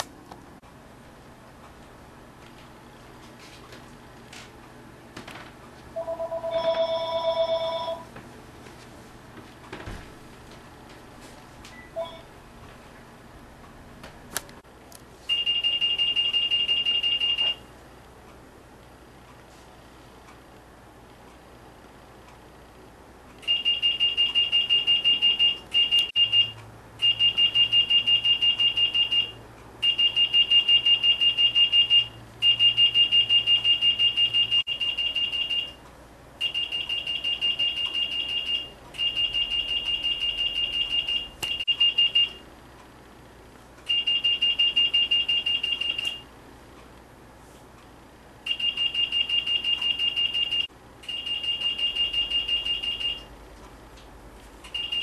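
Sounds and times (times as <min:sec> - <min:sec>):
security alarm pulsing beep: 0:11.8 - 0:12.3, 0:15.3 - 0:17.6, 0:23.4 - 0:35.8, 0:36.4 - 0:42.4, 0:43.9 - 0:46.2, 0:48.5 - 0:53.3, 0:54.7 - 0:55.0.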